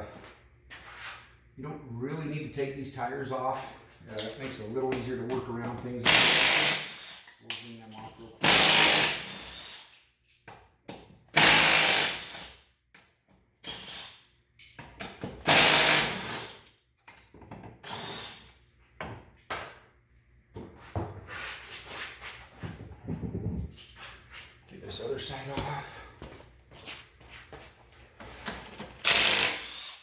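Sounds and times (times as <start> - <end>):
power tool spinning lug nuts: 6.0 - 7.4, 8.4 - 10.0, 11.4 - 12.6, 15.4 - 16.6, 17.8 - 18.5, 28.9 - 30.0.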